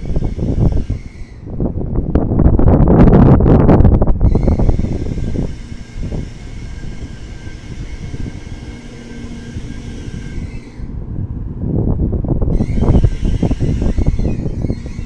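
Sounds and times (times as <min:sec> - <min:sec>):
train running rumble: 0:03.7 - 0:15.0.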